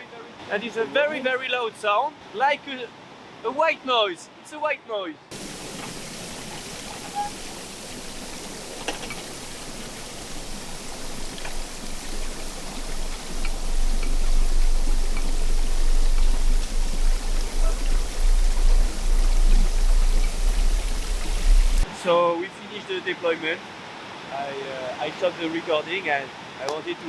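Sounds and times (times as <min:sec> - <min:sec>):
underwater water hiss: 0:05.3 - 0:22.1
deep underwater rumble: 0:05.4 - 0:21.8
faint ticks: 0:08.8 - 0:21.8.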